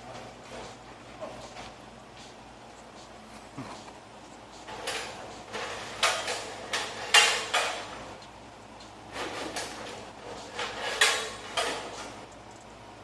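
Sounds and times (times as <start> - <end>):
metal ladder clanking and rattling: 4.6 - 8.2, 9.1 - 12.3.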